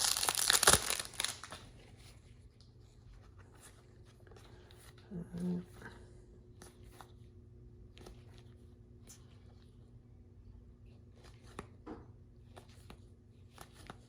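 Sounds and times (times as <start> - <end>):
cards flipped by hand: 0.0 - 1.7
faint steady hum: 0.0 - 14.0.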